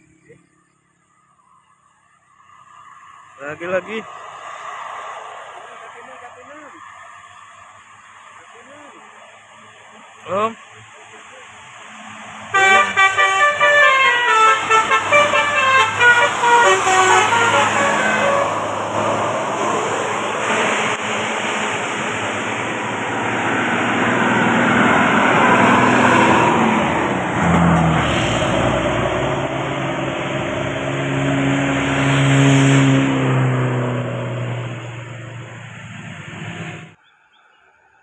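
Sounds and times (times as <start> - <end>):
road noise: 0.0 - 38.0
bus engine pulling away: 11.2 - 37.0.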